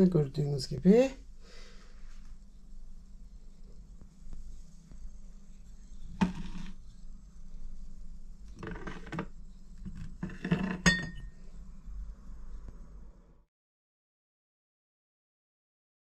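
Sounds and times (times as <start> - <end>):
glass bottles clinking: 10.2 - 11.3.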